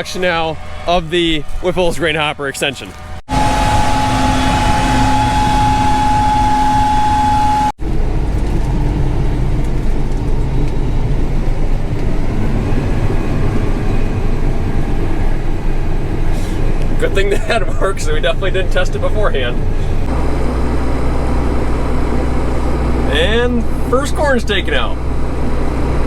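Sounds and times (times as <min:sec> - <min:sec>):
high machine whine: 0:03.3 - 0:15.8
combine harvester rumble: 0:03.3 - 0:26.0.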